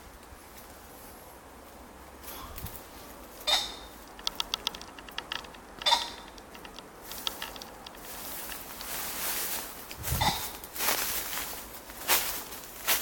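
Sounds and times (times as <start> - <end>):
pheasant calling: 3.4 - 4.0, 5.8 - 7.2, 10.1 - 10.6.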